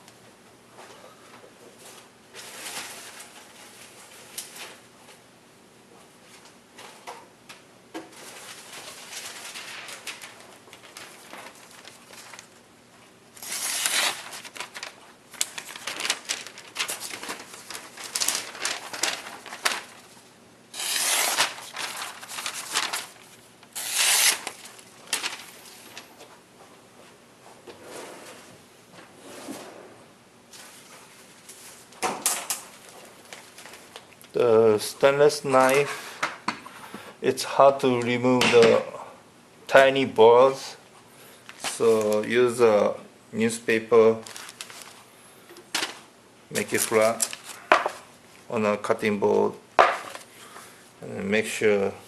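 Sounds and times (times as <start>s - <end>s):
knife blade scraping: 20.8s - 21.4s.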